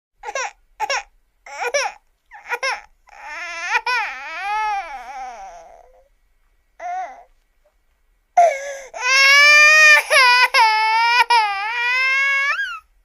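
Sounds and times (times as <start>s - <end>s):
cartoon baby crying: 9.0s - 12.8s.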